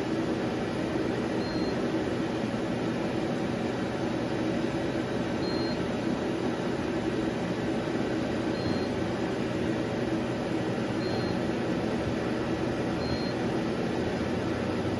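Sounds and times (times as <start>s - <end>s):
machine running with steady hum: 0.0s - 14.9s
short high beeps: 11.0s - 11.4s, 13.0s - 13.4s.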